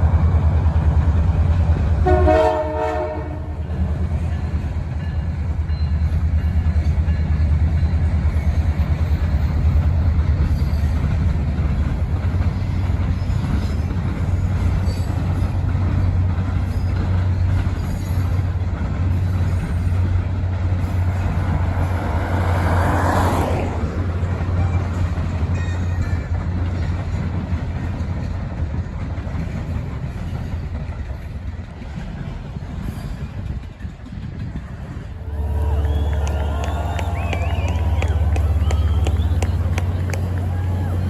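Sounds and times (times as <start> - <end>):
diesel train rumbling by: 0.0 - 41.0.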